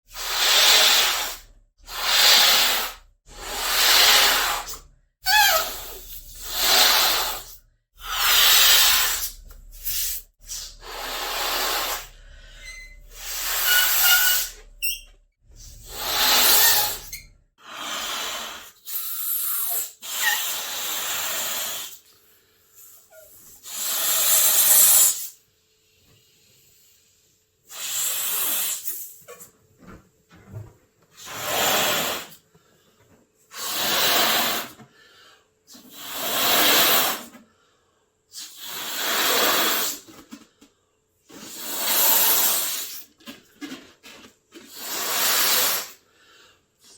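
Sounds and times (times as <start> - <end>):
air hissing from balloons: 0.1 - 29.5, 31.1 - 37.4, 38.3 - 40.5, 41.2 - 46.9
stretched rubber squeaks: 5.3 - 6.8, 12.6 - 15.2, 15.8 - 17.3.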